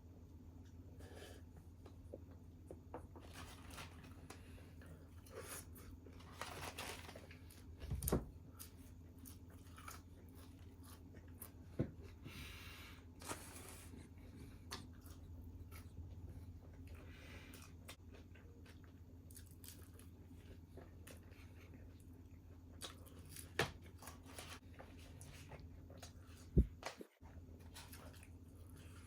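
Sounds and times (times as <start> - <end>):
food wrapper rustling: 6.2 - 7.6
soft chewing: 8.4 - 12.6, 13.2 - 29.0.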